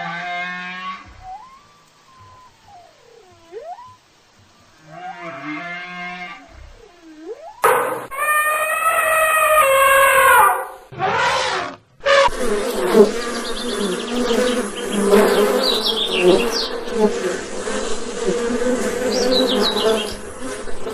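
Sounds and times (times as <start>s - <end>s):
long drawn-out animal call: 0.0s - 13.4s
buzzing insect: 12.0s - 20.9s.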